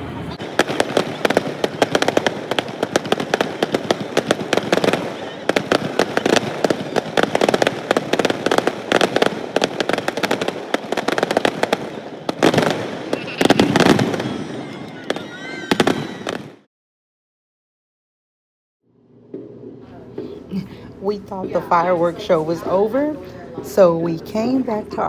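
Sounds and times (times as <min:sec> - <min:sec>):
fireworks crackling and banging: 0:00.1 - 0:16.7.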